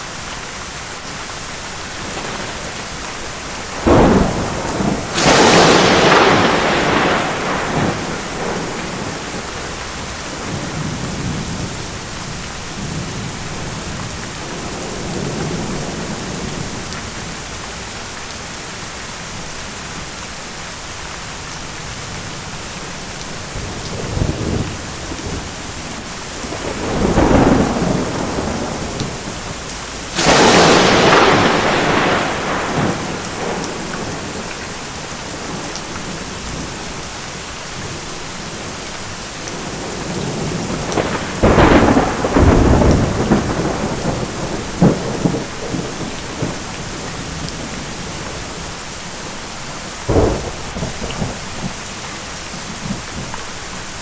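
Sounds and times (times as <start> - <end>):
steady rain: 0.0 - 54.0
rolling thunder: 1.9 - 17.3, 23.4 - 36.9, 39.4 - 53.3
sharp thunderclap: 3.7 - 9.7, 23.6 - 34.7, 39.5 - 48.6, 50.0 - 51.8.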